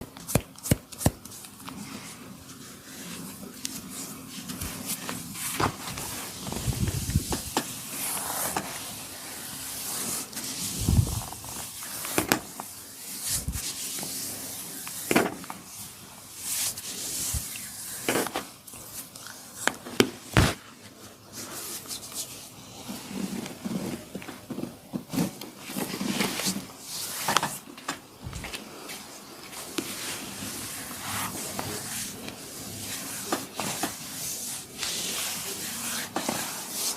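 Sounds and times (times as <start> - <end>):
hands rubbing hair and skin: 0.2 - 15.7.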